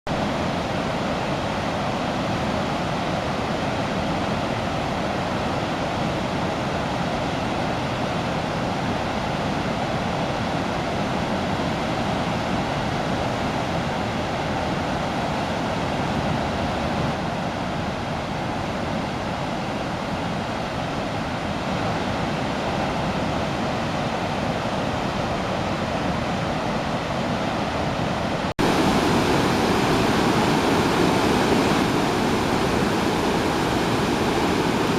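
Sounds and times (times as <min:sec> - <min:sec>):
waterfall rushing: 0:27.9 - 0:34.9.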